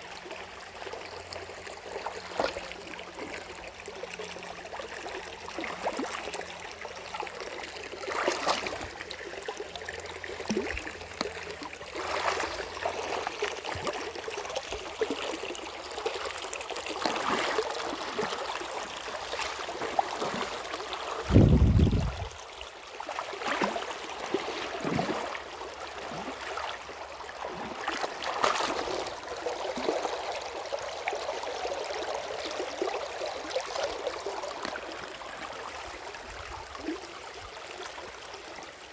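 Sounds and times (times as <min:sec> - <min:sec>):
stream water trickling: 0:00.0 - 0:38.9
water splashes: 0:07.5 - 0:37.2
loud low rumble: 0:21.3 - 0:22.3.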